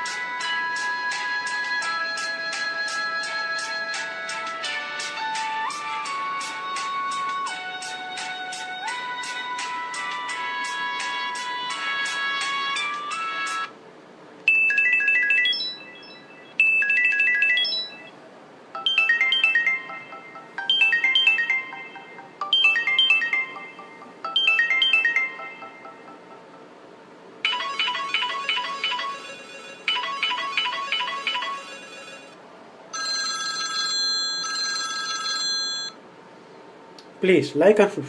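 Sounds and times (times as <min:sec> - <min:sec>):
mobile phone ringtones: 0:14.5 - 0:18.2, 0:18.8 - 0:26.7, 0:27.4 - 0:32.4, 0:33.0 - 0:36.0.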